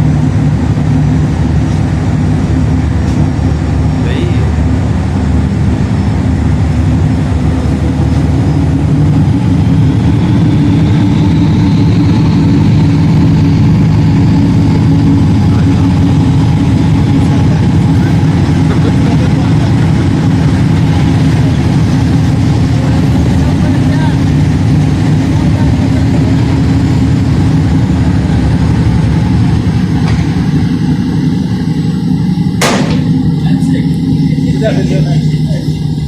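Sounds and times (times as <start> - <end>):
diesel boat engines running: 0.0 - 36.0
faint rising whine: 0.0 - 36.0.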